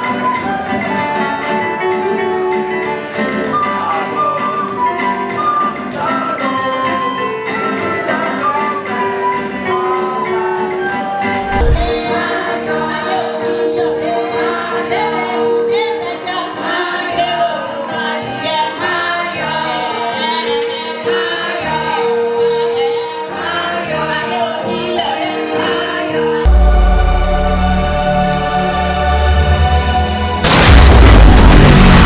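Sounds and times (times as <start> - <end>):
low thump: 11.4 - 12.0.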